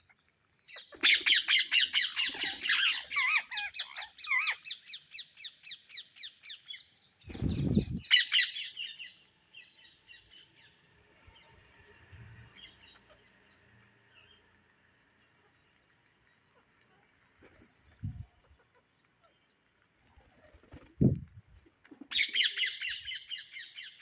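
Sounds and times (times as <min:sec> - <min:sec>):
parrot squawking calls: 0:00.7 - 0:04.8.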